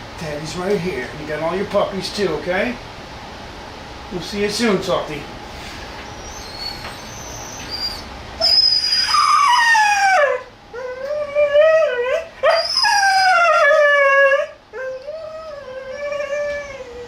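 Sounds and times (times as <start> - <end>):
dog whining and howling: 6.1 - 17.0.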